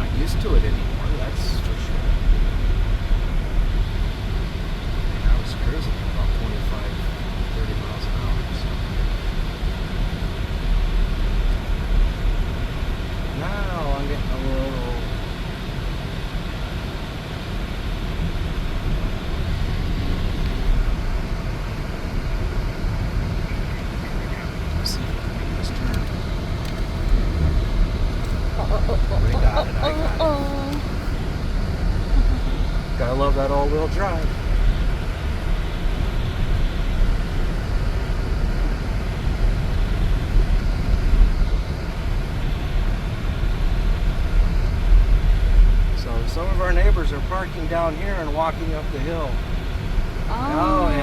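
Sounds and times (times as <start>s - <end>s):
car cabin low rumble: 0.0s - 51.0s
tyres hissing on snowy road: 23.3s - 47.9s.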